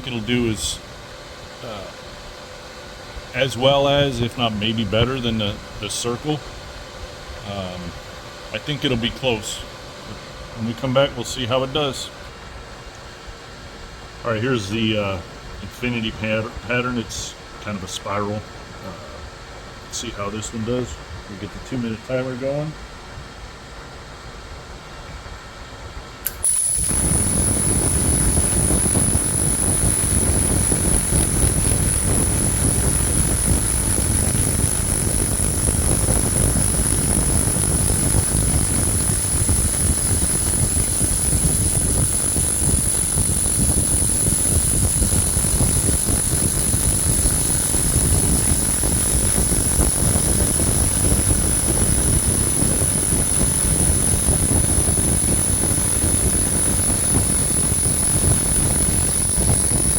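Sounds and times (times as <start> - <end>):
high-pitched whine: 0.0 - 0.9, 1.6 - 2.1, 7.4 - 12.2, 26.2 - 59.9
laser cleaner rushing noise: 1.6 - 2.0, 26.2 - 59.9.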